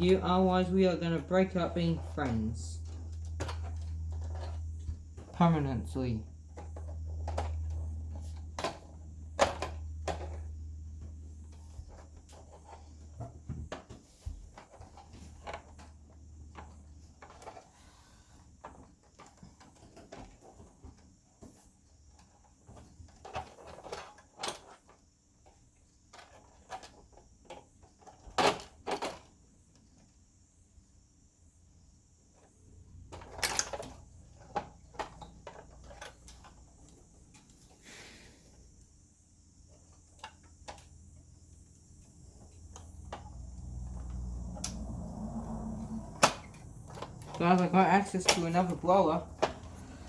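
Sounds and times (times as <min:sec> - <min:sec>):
low hum: 0:41.8 - 0:50.0.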